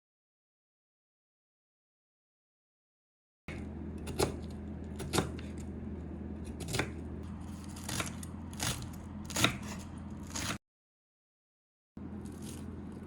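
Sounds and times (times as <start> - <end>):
knife chopping on cutting board: 3.5 - 5.8, 6.4 - 10.6
steady low hum: 3.5 - 10.6, 12.0 - 13.0.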